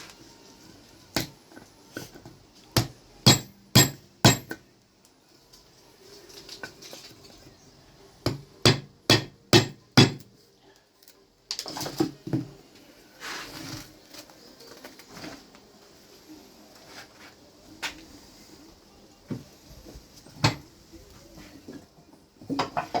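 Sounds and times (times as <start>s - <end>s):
mallet striking chisel: 2.8s - 4.6s, 8.3s - 10.3s.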